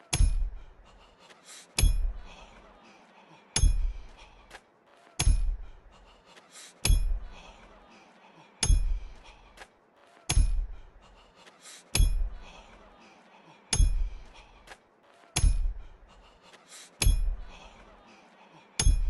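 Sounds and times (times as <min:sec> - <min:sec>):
hammer striking nail: 0:00.1 - 0:00.5, 0:05.2 - 0:05.6, 0:08.6 - 0:09.0, 0:10.3 - 0:10.7, 0:12.0 - 0:12.2, 0:13.8 - 0:14.1, 0:15.4 - 0:15.7, 0:17.0 - 0:17.3.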